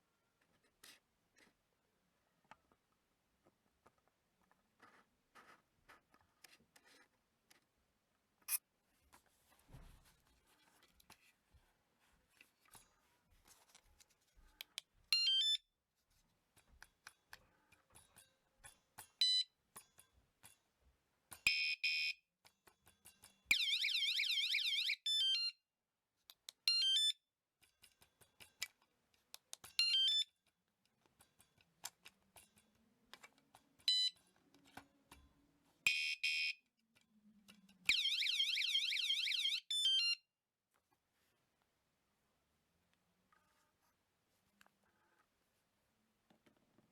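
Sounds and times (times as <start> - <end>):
alarm siren chirps and warbling: 23.5 - 25.5, 37.9 - 40.2.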